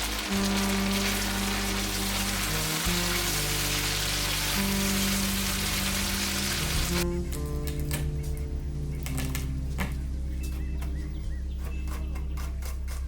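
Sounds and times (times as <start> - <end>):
food sizzling in a hot pan: 0.0 - 7.0
background music with held notes: 0.0 - 13.0.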